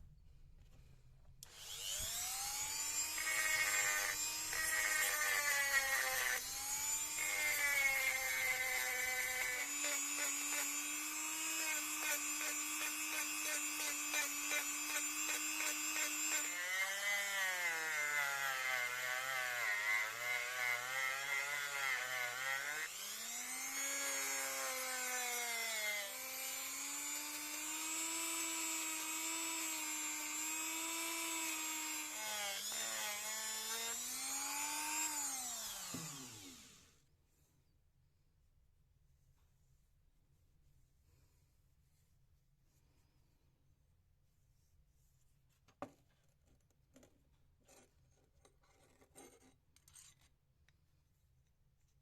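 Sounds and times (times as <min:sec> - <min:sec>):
small power tool motor running: 0:01.4 - 0:37.0.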